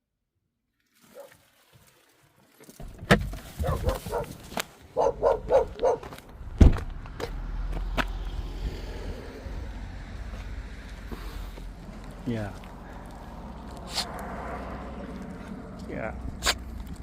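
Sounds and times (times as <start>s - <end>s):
dog yapping: 3.6s - 4.4s, 5.0s - 6.1s
steady low rumble: 8.2s - 17.0s.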